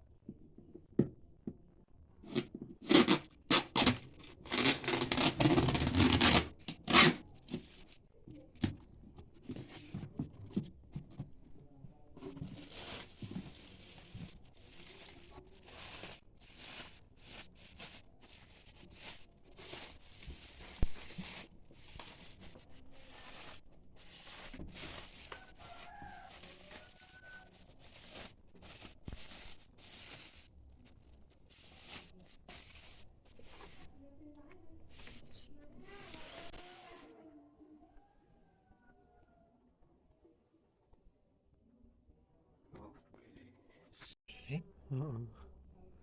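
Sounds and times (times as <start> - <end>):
packaging tearing: 2.3 - 7.8
crinkling and rustling: 2.3 - 37.0.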